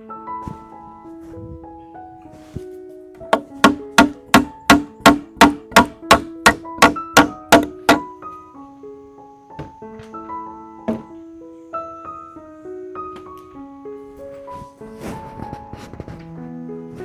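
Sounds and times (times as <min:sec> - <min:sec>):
sharp evenly spaced knocks: 0:03.4 - 0:08.1
piano music: 0:03.4 - 0:09.5.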